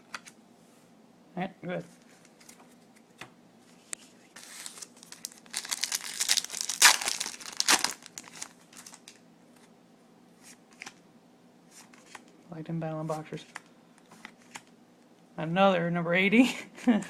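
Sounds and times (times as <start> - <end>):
foil wrapper tearing and crinkling: 4.4 - 9.2.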